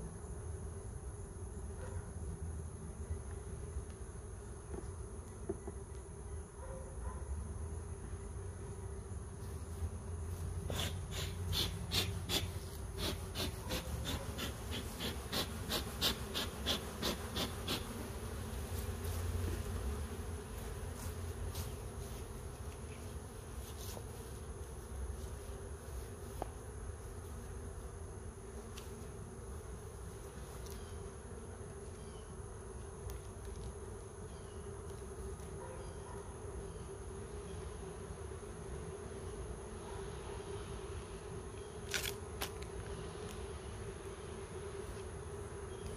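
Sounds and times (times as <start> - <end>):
bees buzzing: 8.2 - 32.9.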